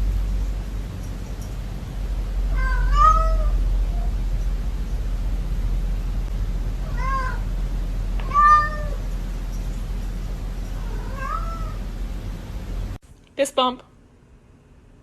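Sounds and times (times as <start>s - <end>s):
steady low hum: 0.0s - 15.0s
cat meowing: 2.5s - 4.1s, 6.8s - 7.5s, 8.2s - 9.0s, 10.8s - 11.8s.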